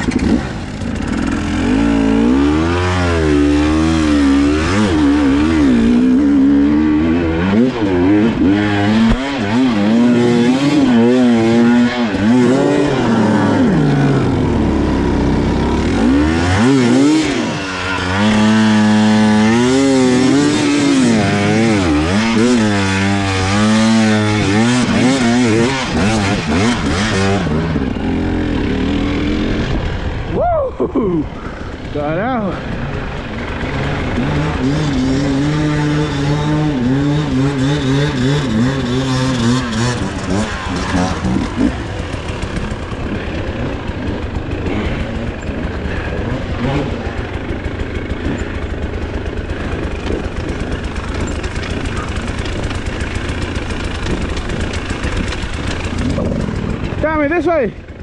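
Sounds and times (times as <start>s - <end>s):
dirt bike engine revving: 0.0s - 58.0s.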